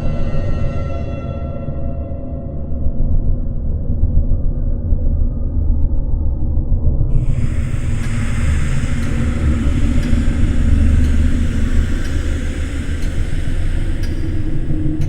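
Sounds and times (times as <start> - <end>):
deep rumble: 7.1 - 15.0
faint clicks: 7.1 - 15.0
hissing layer: 7.1 - 15.0.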